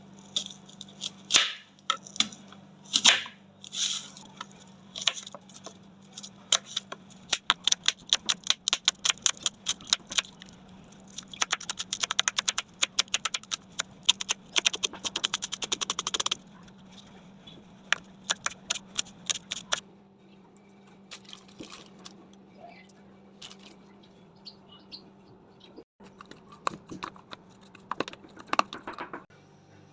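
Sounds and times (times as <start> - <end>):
kitchen knocks and clicks: 26.6 - 29.3.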